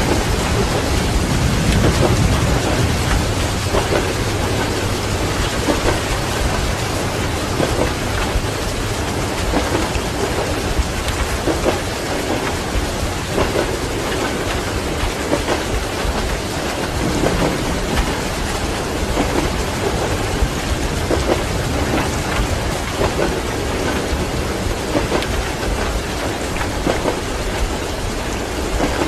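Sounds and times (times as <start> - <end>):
moving train rumble: 0.0 - 29.0
steady rain falling: 0.0 - 29.0
thunder: 0.0 - 29.0.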